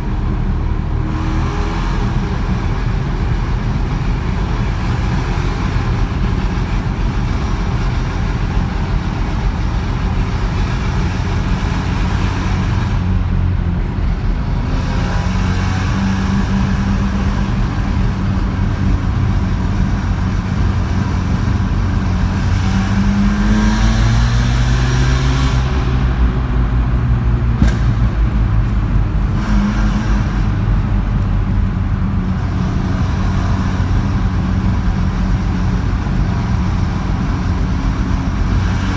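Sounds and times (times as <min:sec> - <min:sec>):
rotary engine revving: 0:14.0 - 0:31.2
engine afterfire pop: 0:25.7 - 0:29.6.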